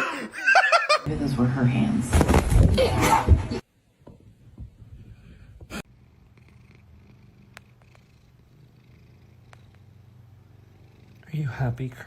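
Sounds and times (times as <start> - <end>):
cat purring: 5.9 - 11.6.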